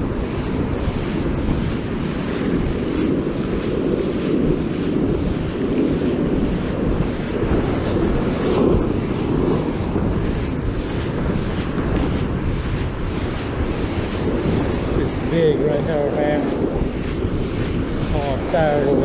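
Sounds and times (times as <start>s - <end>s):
ocean surf: 0.0s - 19.0s
wind buffeting microphone: 0.0s - 19.0s.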